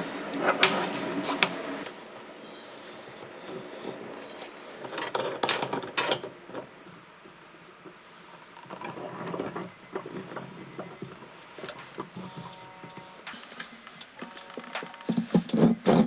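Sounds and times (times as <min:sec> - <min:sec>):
knocks and scrapes of wood and tools: 0:07.8 - 0:16.0.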